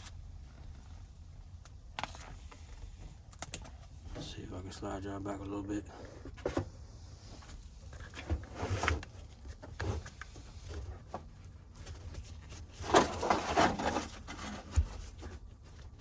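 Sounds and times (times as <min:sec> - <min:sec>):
crinkling: 0:00.0 - 0:04.2.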